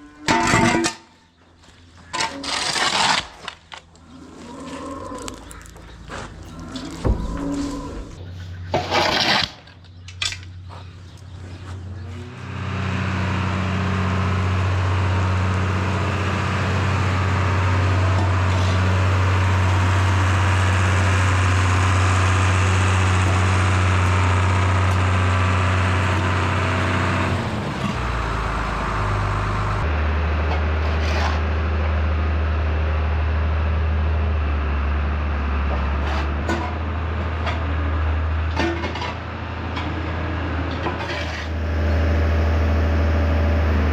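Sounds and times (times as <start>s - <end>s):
farm machine engine running: 9.9s - 43.9s.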